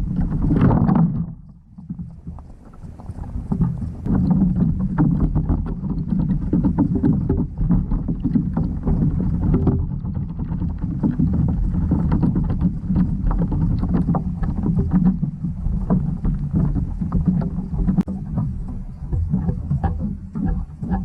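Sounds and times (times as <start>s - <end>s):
faint underwater clicks: 0.0s - 21.0s
muffled underwater rumble: 0.0s - 21.0s.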